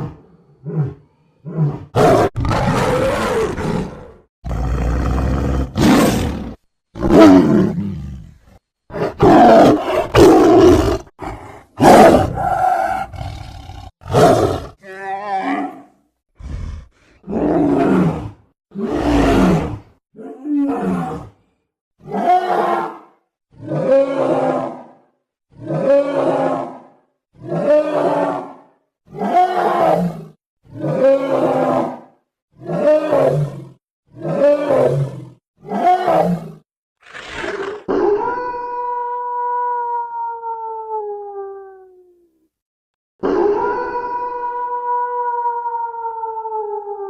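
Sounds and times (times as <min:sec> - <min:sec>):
werewolf growling roars: 0:16.4 - 0:21.4
long howl sinking in pitch: 0:43.3 - 0:47.0.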